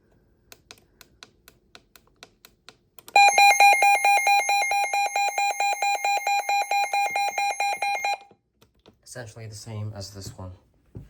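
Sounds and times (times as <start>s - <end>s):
rapid high alert beeping: 3.2s - 8.2s.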